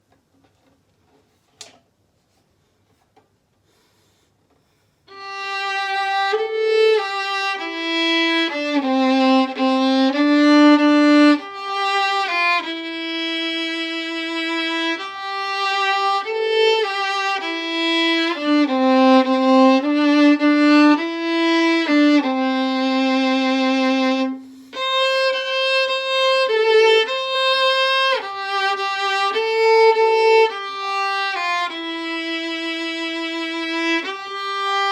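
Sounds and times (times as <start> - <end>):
click: 0.1 - 1.9
solo violin melody: 5.1 - 34.9.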